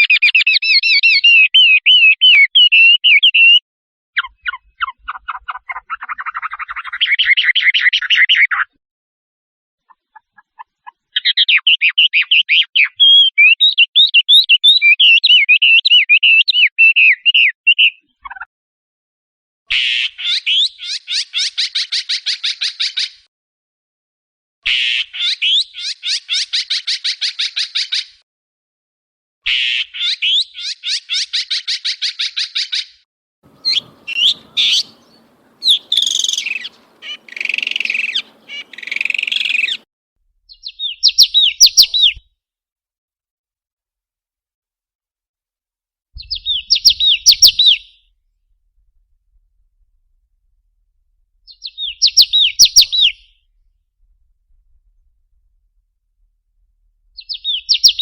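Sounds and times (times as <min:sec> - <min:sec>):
harsh squawking calls: 0:19.7 - 0:23.1, 0:24.7 - 0:28.1, 0:29.5 - 0:32.9, 0:33.5 - 0:39.8, 0:40.5 - 0:42.2, 0:46.2 - 0:48.0, 0:51.5 - 0:53.5, 0:57.1 - 0:58.0.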